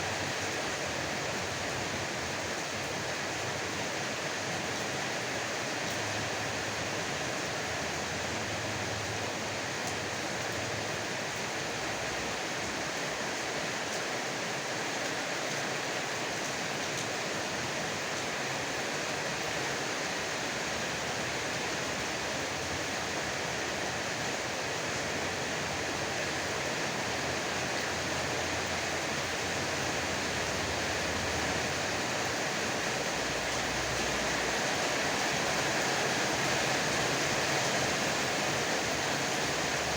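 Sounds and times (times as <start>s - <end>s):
heavy rain hissing: 17.2s - 39.9s.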